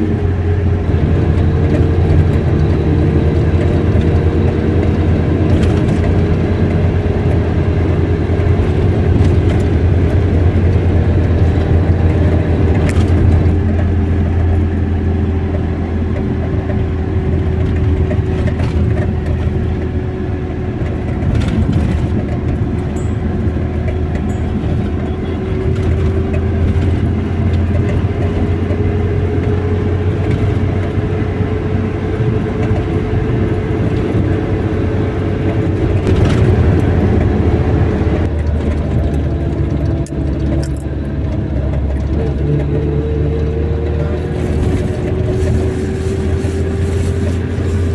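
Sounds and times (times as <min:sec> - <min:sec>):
car engine and road noise: 0:00.0 - 0:47.9
held tone: 0:23.0 - 0:25.8.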